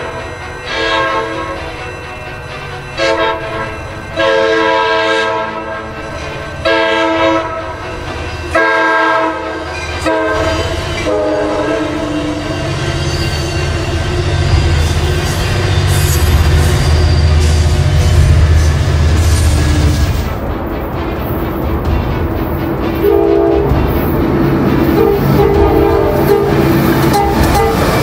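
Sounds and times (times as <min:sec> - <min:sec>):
train rumbling: 0:00.0 - 0:28.0
locomotive air horn blasts: 0:00.7 - 0:01.6, 0:03.0 - 0:06.0, 0:06.6 - 0:07.8, 0:08.5 - 0:12.5, 0:23.0 - 0:23.7, 0:25.0 - 0:28.0.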